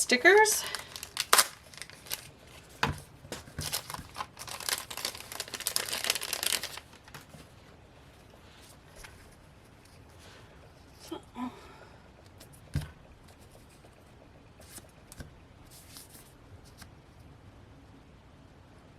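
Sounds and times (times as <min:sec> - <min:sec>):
packaging crinkling and tearing: 0:00.3 - 0:07.4.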